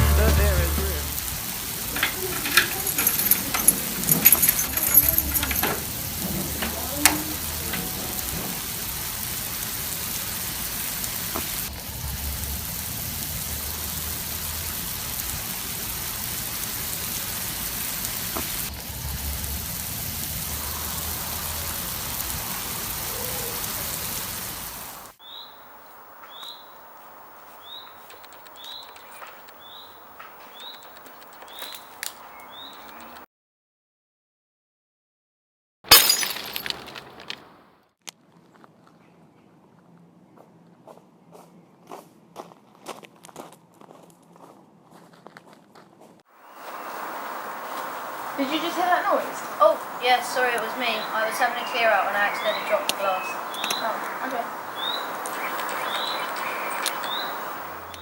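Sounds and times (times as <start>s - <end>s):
campfire crackling: 0.0s - 25.2s, 46.4s - 58.0s.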